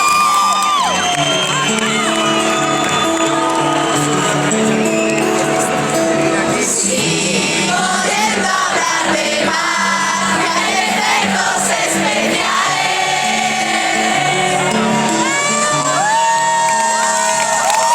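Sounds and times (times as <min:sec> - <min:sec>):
crowd whooping and shouting: 0:00.0 - 0:06.0, 0:07.0 - 0:17.9
crowd singing along: 0:02.6 - 0:16.2.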